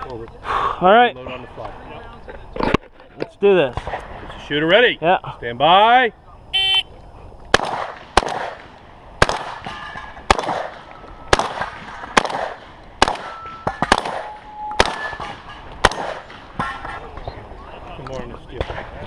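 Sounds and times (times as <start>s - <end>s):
shotgun shots echoing: 7.5s - 17.1s
steel targets ringing: 9.6s - 11.4s, 13.2s - 17.1s.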